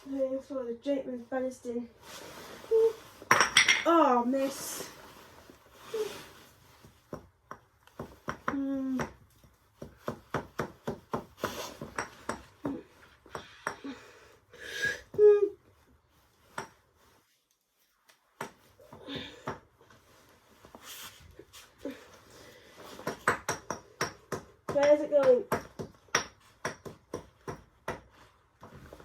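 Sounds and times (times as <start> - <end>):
hard objects clinking and knocking: 3.2 - 4.0.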